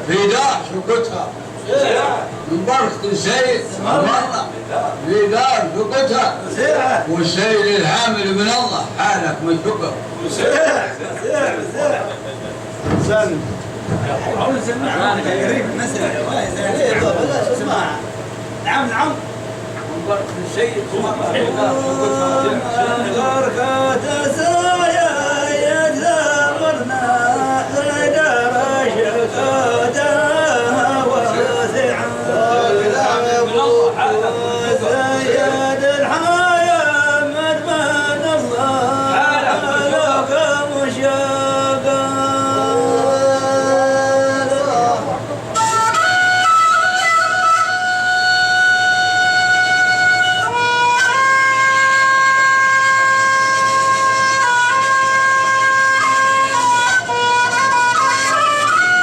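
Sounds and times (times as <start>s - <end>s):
man singing long wavering notes: 21.2s - 59.0s
woodwind slow melody: 45.5s - 59.0s.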